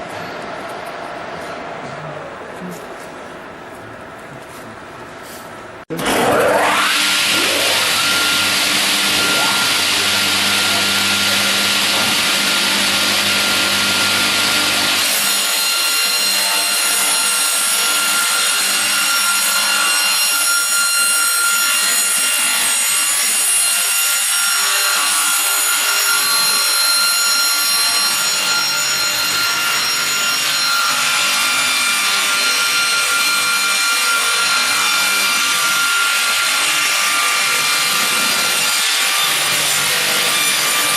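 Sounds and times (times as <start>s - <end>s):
high whine with steady tones: 5.7s - 13.3s
saw cutting wood: 5.9s - 40.9s.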